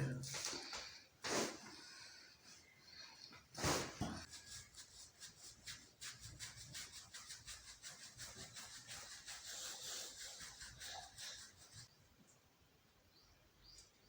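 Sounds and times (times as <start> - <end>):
rhythmic hand rubbing: 4.2 - 11.9.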